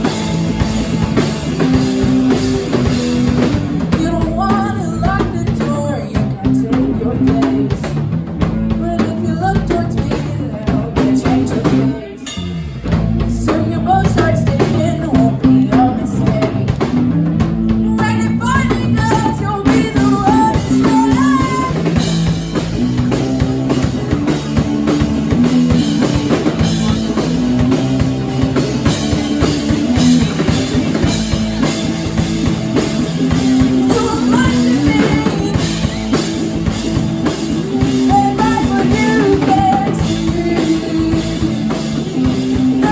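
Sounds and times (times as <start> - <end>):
rock band playing live: 0.0 - 42.9
person singing: 8.7 - 12.4, 13.3 - 17.1, 17.7 - 31.8, 33.0 - 42.9.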